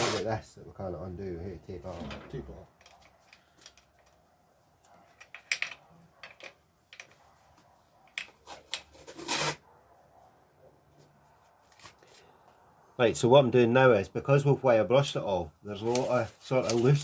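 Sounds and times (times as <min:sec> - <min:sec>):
tape rustles and clicks: 0:02.7 - 0:04.2, 0:04.8 - 0:09.6, 0:10.9 - 0:12.6, 0:15.8 - 0:17.0
masking tape pulled off roll: 0:09.0 - 0:09.6.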